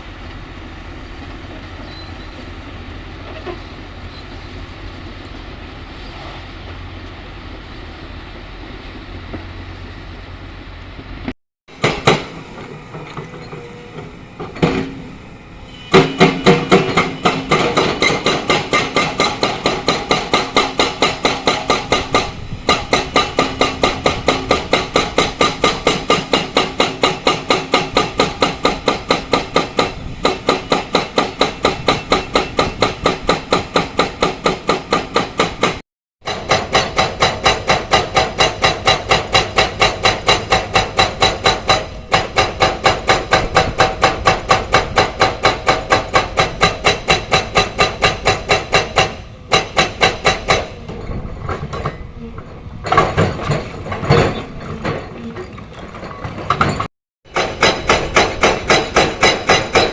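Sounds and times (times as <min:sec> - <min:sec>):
hydraulic breaker pounding rock: 0:11.7 - 0:15.2, 0:15.9 - 0:59.9.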